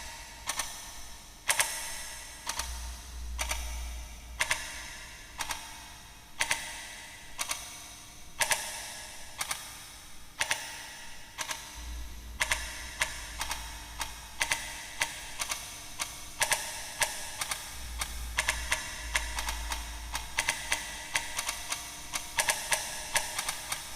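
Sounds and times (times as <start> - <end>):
echoing clock ticks: 0.0 - 7.8, 8.4 - 9.7, 10.4 - 23.9
low hum: 11.8 - 14.4.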